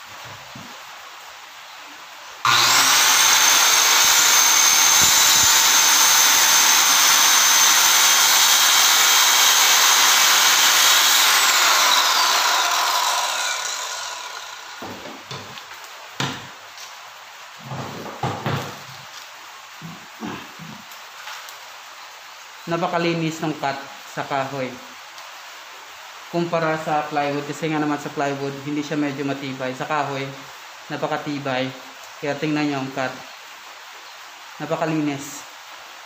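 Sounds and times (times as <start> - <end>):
circular saw cutting wood: 2.4 - 15.0
saw blade spinning down whine: 2.5 - 14.9.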